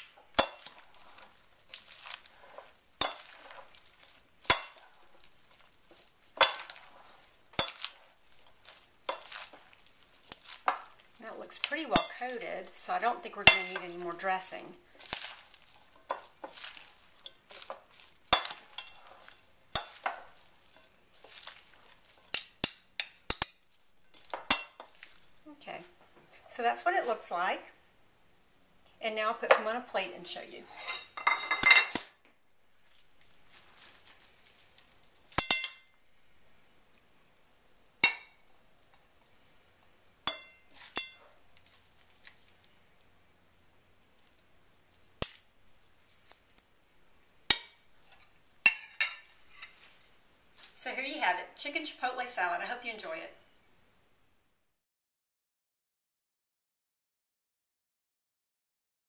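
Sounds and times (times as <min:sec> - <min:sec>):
salad leaves rustling: 0:00.0 - 0:25.6, 0:32.8 - 0:35.5, 0:40.3 - 0:43.1.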